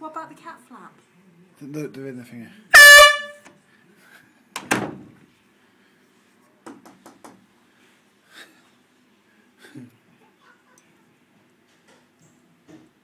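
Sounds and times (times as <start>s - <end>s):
quiet knocks and clicks: 6.6s - 7.4s, 11.6s - 13.0s.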